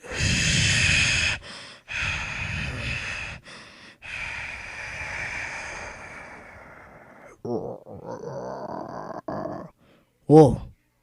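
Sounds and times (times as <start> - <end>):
person breathing hard: 0.0 - 7.5.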